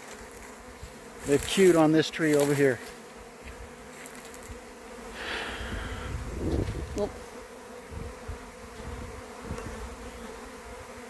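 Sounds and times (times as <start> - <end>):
bee swarm humming: 0.0 - 11.0
low rumble on microphone: 5.7 - 7.1.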